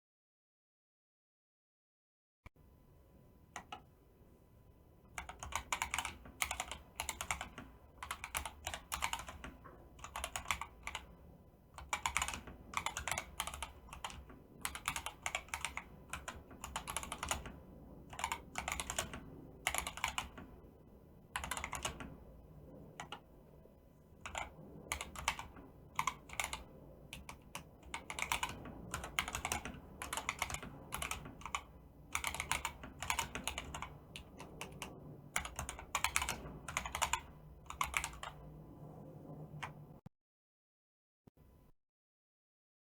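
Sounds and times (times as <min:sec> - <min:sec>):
typing on mechanical keyboard: 0:03.6 - 0:03.9, 0:05.1 - 0:20.7, 0:21.3 - 0:23.3, 0:24.2 - 0:38.5, 0:39.5 - 0:39.8.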